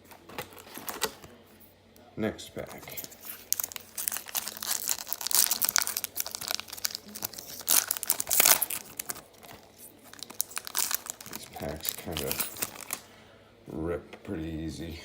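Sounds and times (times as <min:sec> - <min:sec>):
card wrapper tearing and crinkling: 0:00.0 - 0:01.4, 0:02.6 - 0:13.0.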